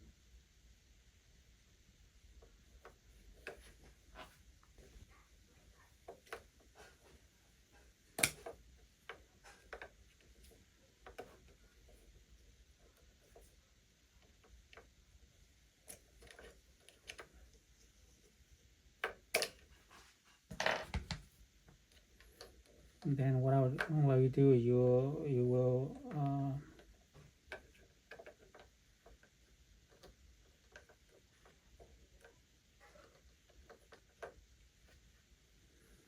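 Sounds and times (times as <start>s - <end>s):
plastic parts clicking and tapping: 8.1s - 12.0s, 26.2s - 35.0s.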